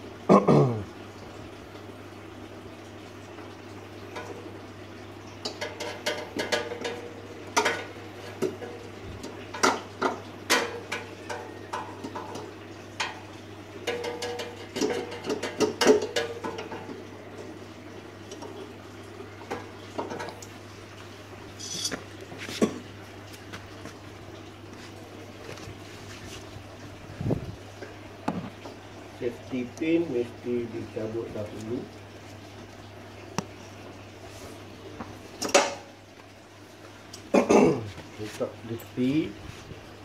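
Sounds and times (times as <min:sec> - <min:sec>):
metal tools clicking and clinking: 0:21.6 - 0:22.0.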